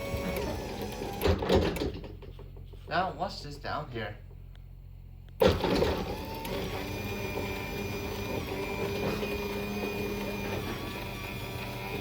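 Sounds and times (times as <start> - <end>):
garage door opener whirring: 0.0 - 2.2, 5.4 - 12.0.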